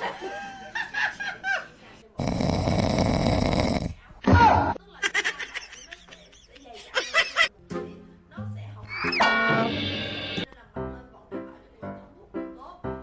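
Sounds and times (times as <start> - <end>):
loud rasping snore: 2.2 - 4.1.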